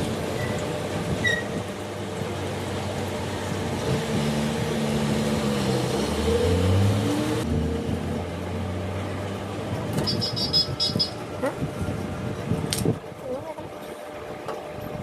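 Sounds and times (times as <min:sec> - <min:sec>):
motorcycle engine revving: 0:03.5 - 0:09.1.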